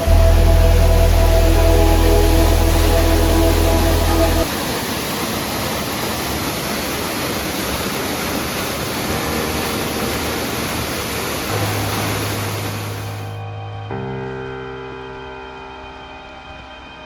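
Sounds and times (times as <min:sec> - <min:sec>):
background music: 0:00.0 - 0:04.5, 0:11.6 - 0:17.0
waterfall roaring: 0:00.0 - 0:13.3.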